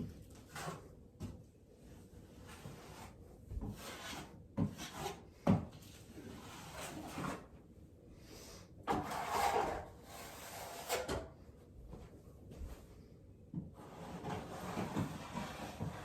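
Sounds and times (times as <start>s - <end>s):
scraping on drywall: 0.2s - 1.0s, 2.2s - 7.5s, 8.9s - 11.4s, 13.7s - 16.0s.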